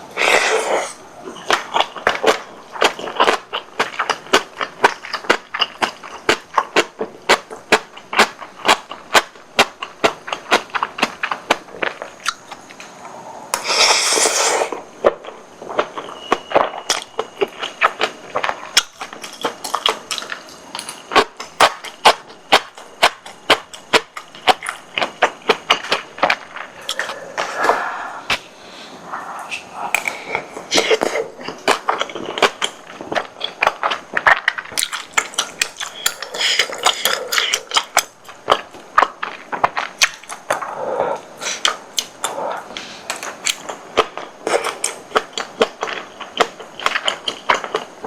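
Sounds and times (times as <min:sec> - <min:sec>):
close chewing with wet mouth clicks: 0:01.4 - 0:12.7, 0:14.7 - 0:20.4, 0:21.1 - 0:28.4, 0:29.9 - 0:48.0.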